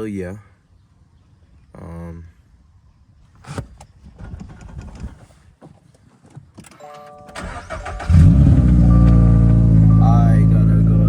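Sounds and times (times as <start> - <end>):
car engine cranking and starting: 6.7 - 11.0
car chime: 6.8 - 11.0.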